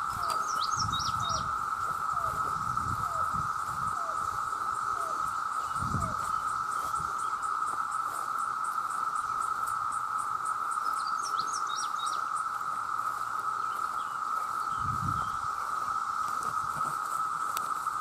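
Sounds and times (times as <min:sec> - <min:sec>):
cicadas droning: 0:00.0 - 0:18.0.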